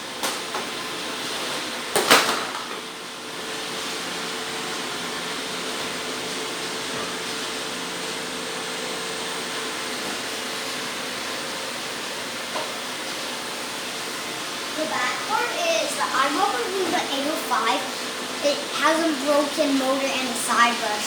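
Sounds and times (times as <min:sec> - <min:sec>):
robot vacuums whirring: 0:09.5 - 0:21.0.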